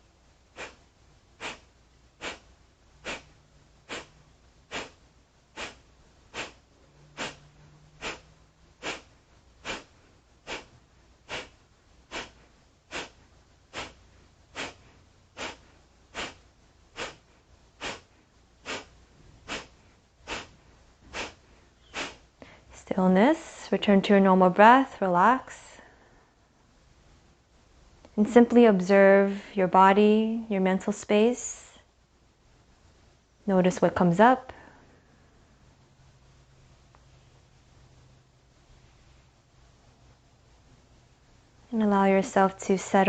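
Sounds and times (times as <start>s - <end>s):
forceful nasal exhales: 0.5s - 0.8s, 1.4s - 22.6s.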